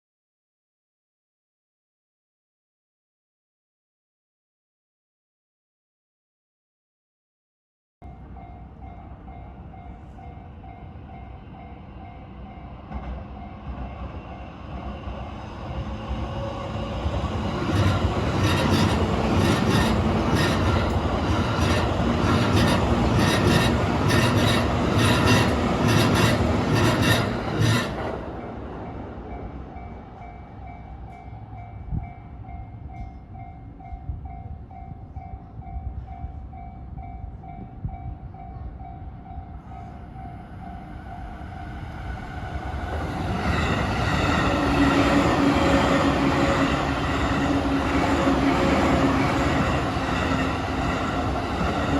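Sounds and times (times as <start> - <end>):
electric train passing: 8.0 - 51.9
wheels clacking over rail joints: 17.3 - 28.3.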